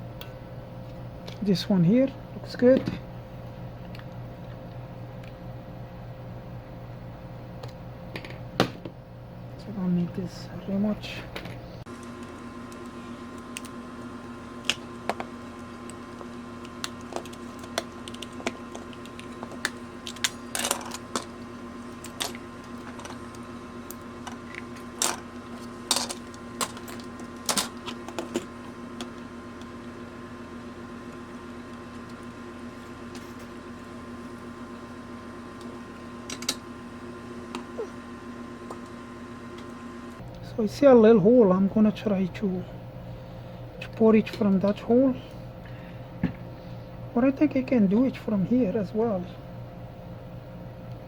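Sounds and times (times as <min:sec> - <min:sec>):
steady electrical hum: 0:00.0 - 0:51.0
plastic parts and tools clicking: 0:14.6 - 0:23.3, 0:23.9 - 0:29.2.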